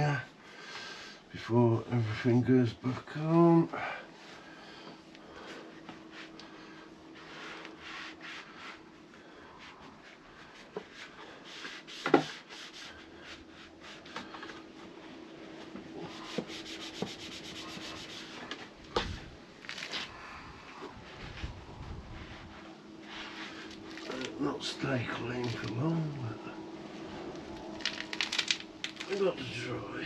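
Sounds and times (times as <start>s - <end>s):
rubbing strokes: 5.3s - 26.0s.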